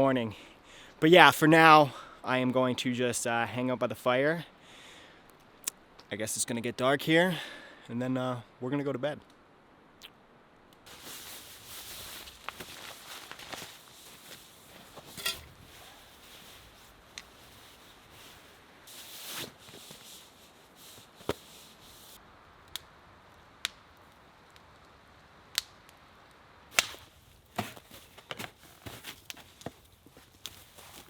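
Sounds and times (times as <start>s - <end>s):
faint fire hiss: 4.0s - 31.0s
campfire crackling and popping: 10.0s - 15.7s, 22.2s - 27.5s.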